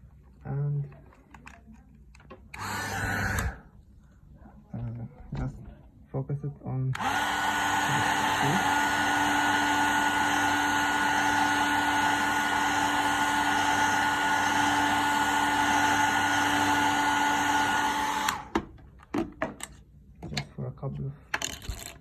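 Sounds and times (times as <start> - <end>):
heat gun blowing with fan whine: 2.6 - 3.7, 7.0 - 18.6.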